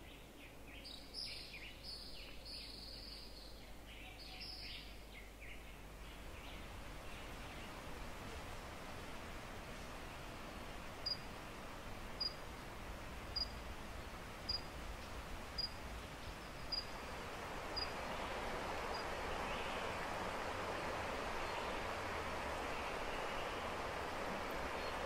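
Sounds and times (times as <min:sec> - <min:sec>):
steady rushing noise: 0:06.6 - 0:25.0.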